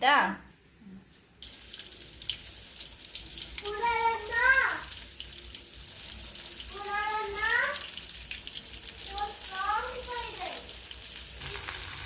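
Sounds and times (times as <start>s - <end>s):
chicken sizzling in hot oil: 1.2s - 12.0s
oil popping: 1.4s - 12.0s
child's high voice: 3.6s - 4.9s, 6.7s - 7.9s, 9.0s - 10.7s.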